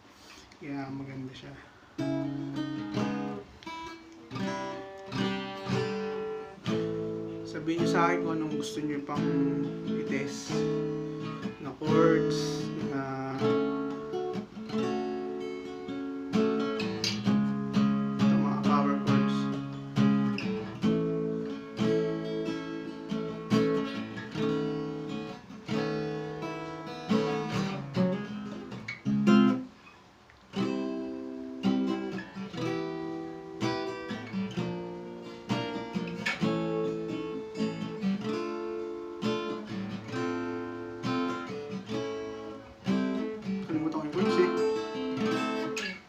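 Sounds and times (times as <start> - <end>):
acoustic guitar strummed: 0.0 - 46.0.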